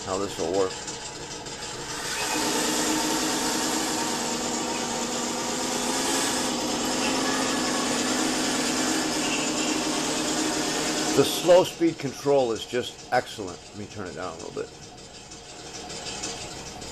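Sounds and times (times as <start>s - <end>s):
simulated tank engine drone: 0.0s - 16.9s.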